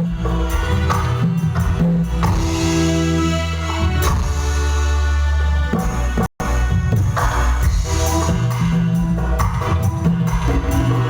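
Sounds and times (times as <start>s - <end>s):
low drum pulse: 5.8s - 11.0s.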